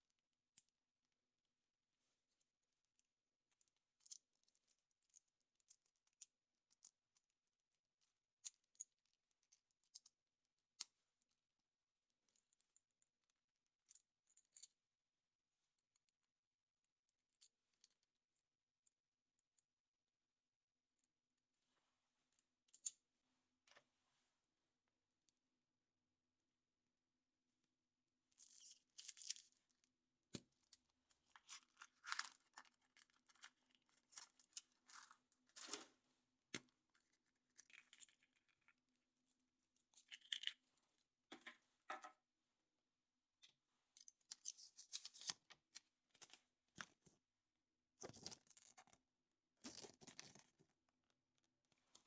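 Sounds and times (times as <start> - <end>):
foil wrapping tearing and crinkling: 31.5 - 33.5.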